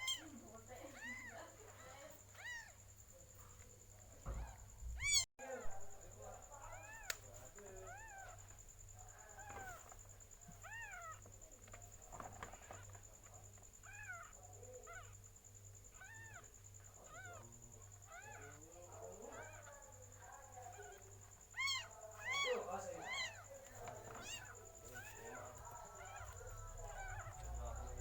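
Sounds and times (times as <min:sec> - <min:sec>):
cat mewing: 0:04.2 - 0:05.3, 0:15.9 - 0:19.8, 0:20.7 - 0:28.0.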